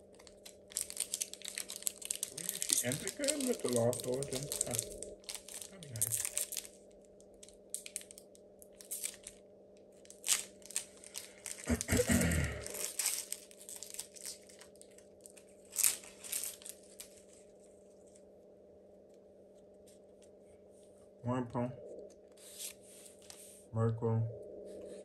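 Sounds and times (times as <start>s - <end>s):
foil wrapper crinkling and tearing: 0.0s - 9.4s, 10.0s - 17.4s.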